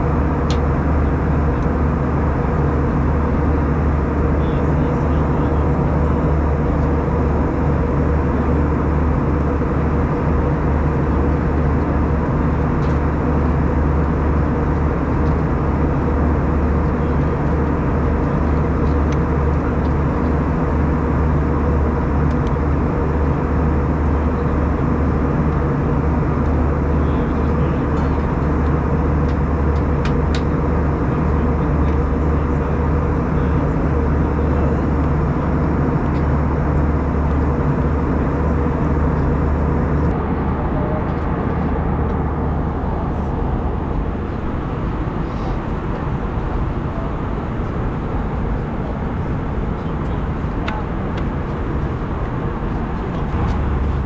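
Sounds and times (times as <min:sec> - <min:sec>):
airflow rushing in aircraft cabin: 0:00.0 - 0:54.0
engine hum: 0:00.0 - 0:54.0
steady low tones: 0:24.4 - 0:46.0, 0:47.9 - 0:54.0.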